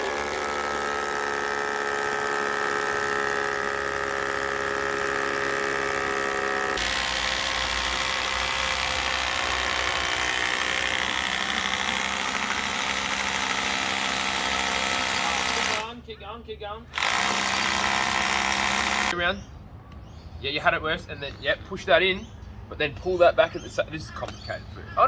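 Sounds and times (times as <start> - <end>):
power drill motor running: 0.0 - 16.0, 16.9 - 19.2.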